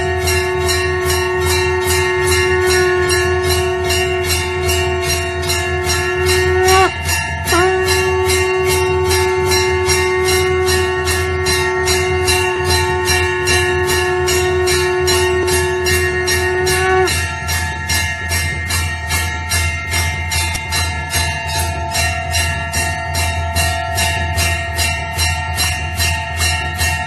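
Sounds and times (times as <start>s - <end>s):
steady held note: 0.0s - 18.4s
hand bell rung rapidly: 0.0s - 27.0s.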